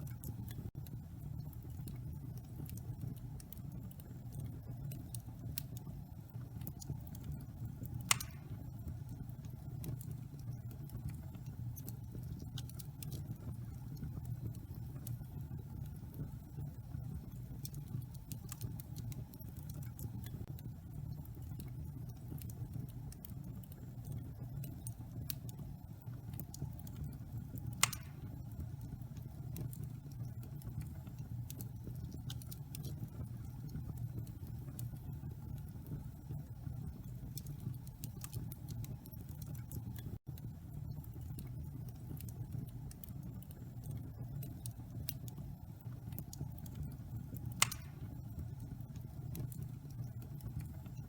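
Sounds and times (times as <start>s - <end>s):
wood fire crackling: 0.0s - 51.0s
sharp pop of fire: 8.1s - 8.7s, 27.8s - 28.4s, 47.6s - 48.2s.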